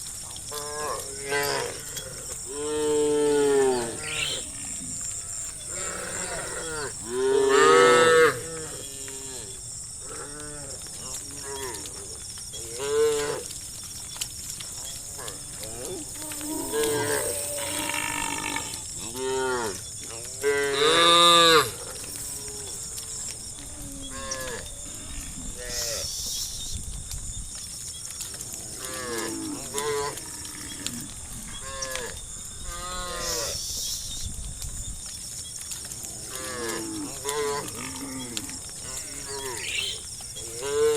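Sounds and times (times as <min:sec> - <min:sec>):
cows mooing: 0:00.8 - 0:09.5, 0:36.7 - 0:40.9
cattle mooing: 0:02.5 - 0:08.8.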